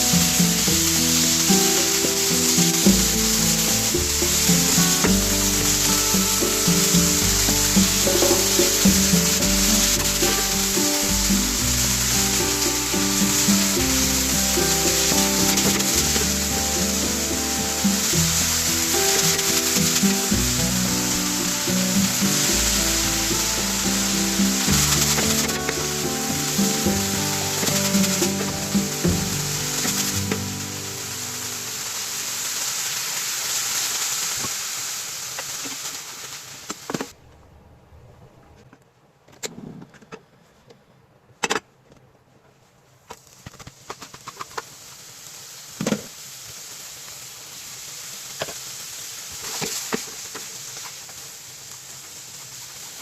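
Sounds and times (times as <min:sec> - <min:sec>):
background music: 0:00.0 - 0:32.5
food sizzling in a frying pan: 0:00.0 - 0:37.1, 0:43.2 - 0:53.0.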